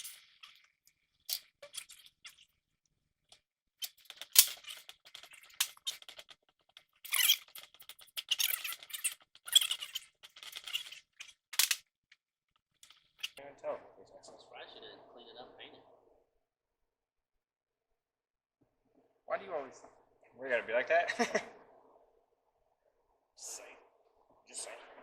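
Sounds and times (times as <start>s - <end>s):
tools scraping and squeaking: 0.0s - 2.6s, 3.8s - 11.9s, 12.7s - 13.4s.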